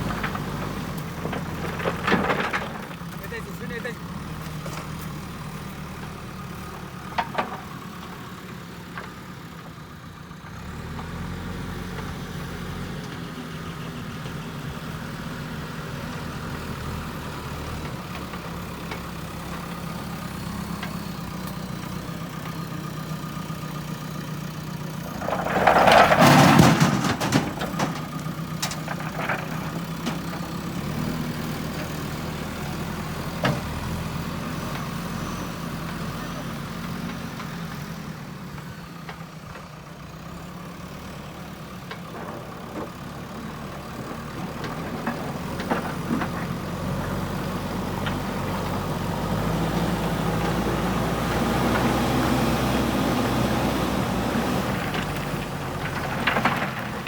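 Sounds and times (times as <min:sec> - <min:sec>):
diesel engine running: 0:00.0 - 0:57.0
stone crashing into trailer: 0:25.1 - 0:30.5.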